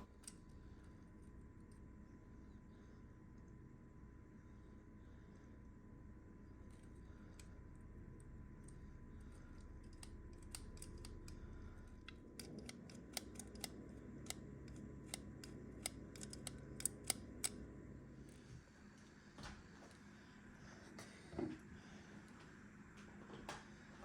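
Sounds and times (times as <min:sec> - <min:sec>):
small parts clicking and tapping: 0:00.0 - 0:01.9, 0:06.6 - 0:17.7
low steady background hum: 0:00.0 - 0:24.0.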